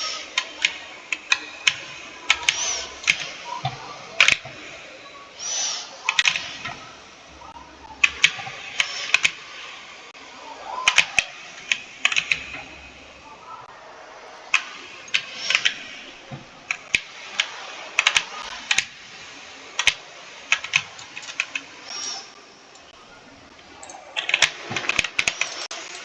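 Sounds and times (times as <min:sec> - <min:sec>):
keyboard key clicks: 0:00.3 - 0:04.6, 0:08.0 - 0:09.5, 0:10.8 - 0:12.9, 0:14.3 - 0:19.0, 0:23.8 - 0:25.6.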